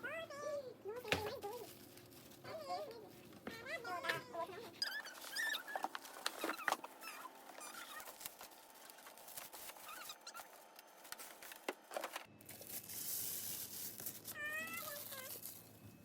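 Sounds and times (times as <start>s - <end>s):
steady hiss with low hum: 0.0s - 16.0s
faint squeaky chirps: 2.4s - 11.4s, 14.2s - 16.0s
packaging crinkling and tearing: 4.8s - 15.8s.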